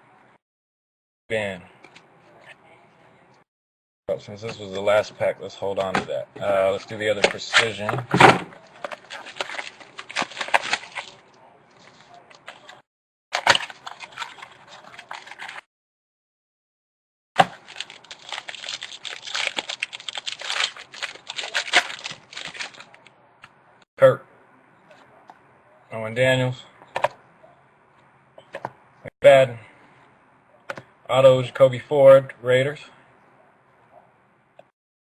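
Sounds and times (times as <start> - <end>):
packaging tearing and crinkling: 8.8 - 11.2, 13.4 - 15.6, 17.4 - 23.0.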